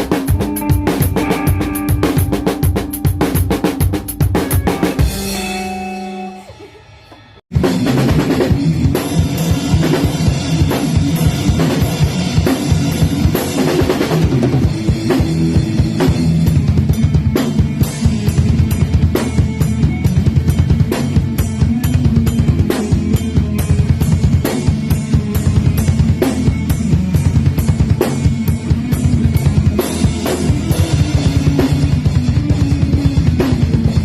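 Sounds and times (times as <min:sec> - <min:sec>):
drum kit playing fast: 0:00.0 - 0:34.0
held low note ringing: 0:02.4 - 0:07.4.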